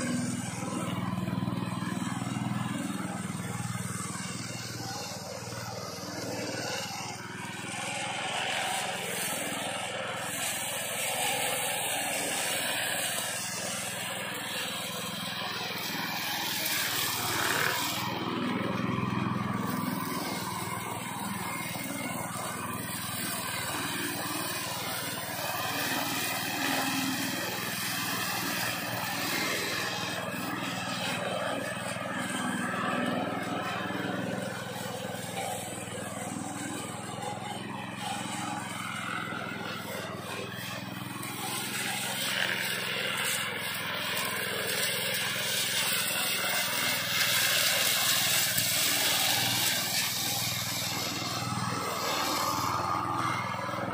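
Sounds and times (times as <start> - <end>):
lawn mower engine running: 0.0 - 53.9.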